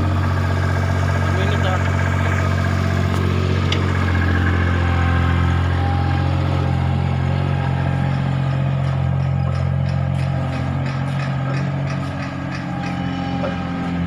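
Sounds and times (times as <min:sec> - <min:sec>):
vehicle engine idling: 0:00.0 - 0:14.0.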